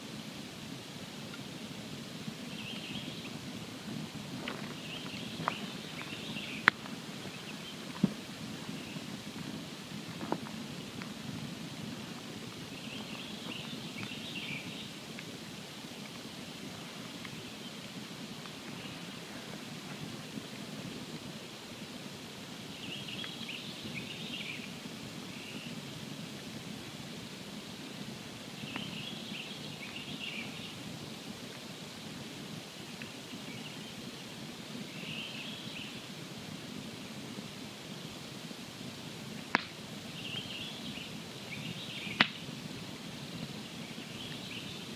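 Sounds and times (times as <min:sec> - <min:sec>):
campfire flames rushing: 0:00.0 - 0:44.9
fire crackling pop: 0:01.2 - 0:18.9, 0:28.6 - 0:29.0, 0:39.1 - 0:40.2, 0:41.6 - 0:44.4.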